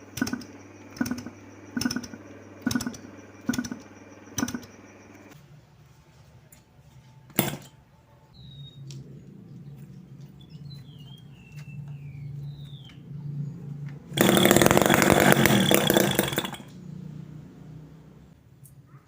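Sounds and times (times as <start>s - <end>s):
birds chirping: 0.0s - 5.4s, 8.4s - 17.1s
low whirr: 0.0s - 5.4s, 8.4s - 18.3s
small engine running fast: 0.0s - 5.4s, 14.1s - 18.3s.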